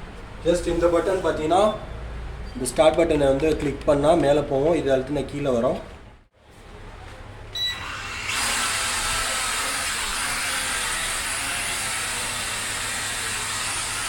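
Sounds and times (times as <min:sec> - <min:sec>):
toy drone propellers whirring: 0:07.8 - 0:14.0.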